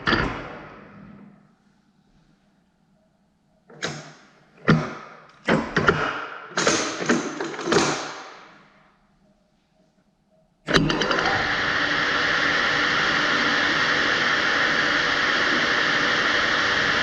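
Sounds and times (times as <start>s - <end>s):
faint steady hum: 0.0s - 4.6s
metal lathe clunks and rattles: 3.7s - 8.3s.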